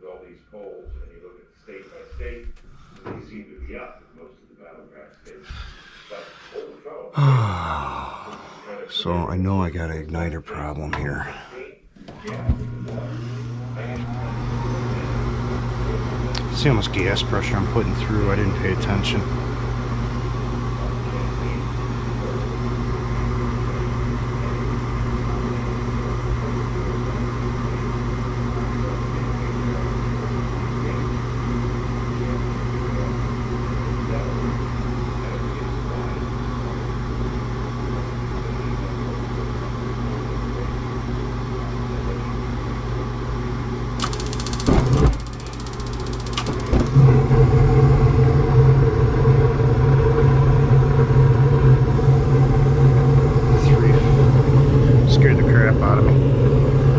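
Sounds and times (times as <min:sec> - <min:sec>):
gas furnace humming: 0:10.8 - 0:22.2, 0:44.0 - 0:48.2
burners igniting with a bang: 0:44.0 - 0:47.2.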